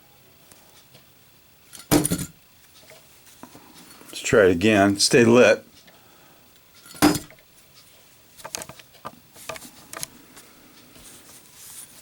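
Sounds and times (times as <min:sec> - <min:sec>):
small metallic clicks and taps: 0:07.8 - 0:10.1.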